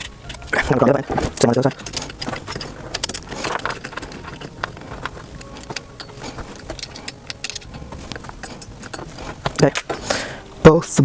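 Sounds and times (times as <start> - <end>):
light clicks and knocks of parts: 0.0 - 10.4.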